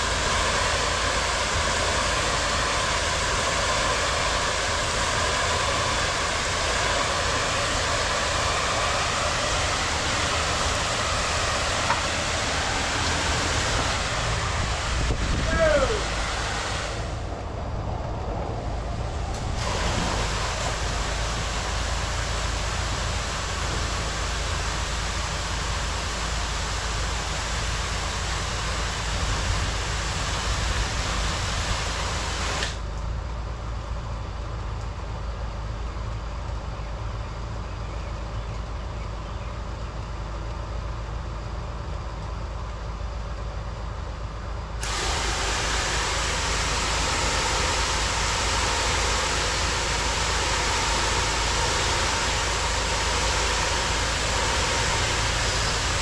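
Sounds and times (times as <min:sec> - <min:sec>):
water spray hiss: 0:00.0 - 0:32.9, 0:44.8 - 0:56.0
pressure washer engine hum: 0:00.0 - 0:56.0.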